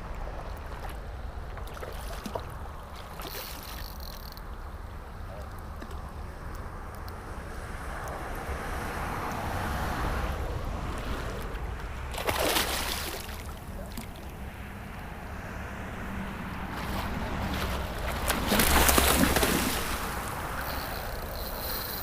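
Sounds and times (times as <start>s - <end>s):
water sloshing and splashing: 0.0s - 4.6s, 10.8s - 14.7s, 16.0s - 22.0s.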